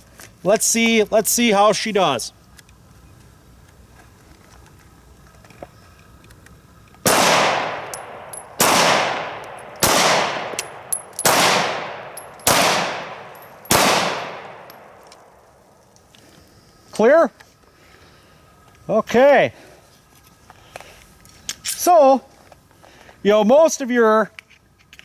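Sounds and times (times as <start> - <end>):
pistol shots with echo: 7.0 - 15.0.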